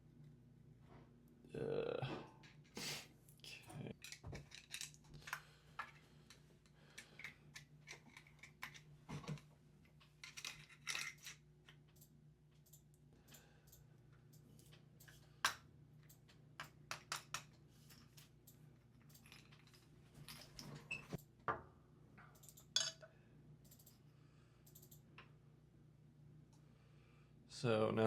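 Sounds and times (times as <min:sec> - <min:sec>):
small parts clicking and tapping: 0:03.9 - 0:21.3, 0:22.2 - 0:24.0, 0:24.6 - 0:25.3.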